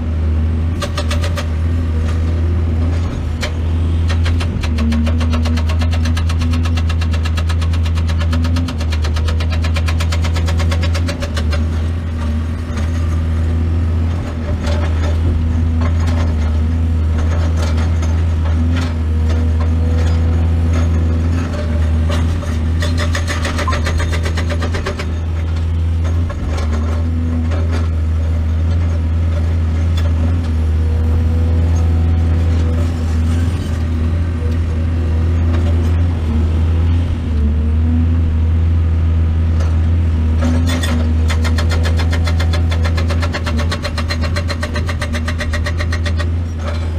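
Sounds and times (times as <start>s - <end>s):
excavator diesel engine running: 0.0s - 46.9s
machine knocks and clatter: 0.8s - 2.2s, 2.8s - 13.2s, 17.2s - 30.5s, 40.4s - 46.9s.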